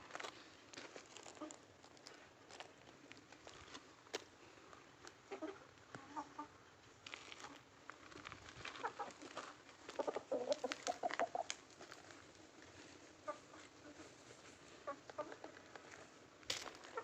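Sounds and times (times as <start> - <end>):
hens clucking: 5.2 - 6.6, 8.7 - 11.8, 13.1 - 16.0, 16.8 - 17.0.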